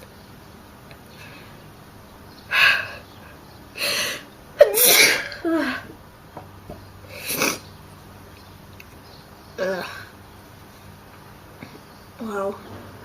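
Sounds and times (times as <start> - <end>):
person sneezing: 4.6 - 5.4.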